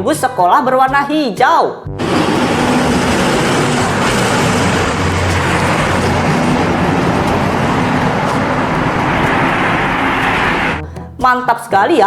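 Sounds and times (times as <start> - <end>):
bus engine rumbling: 1.9 - 10.8
low hum: 1.9 - 10.8
road and traffic noise: 2.0 - 10.8.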